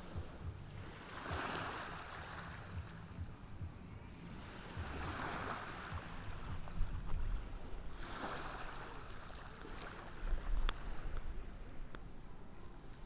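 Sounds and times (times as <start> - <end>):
ocean waves hissing on shore: 0.7 - 3.5, 4.1 - 11.8.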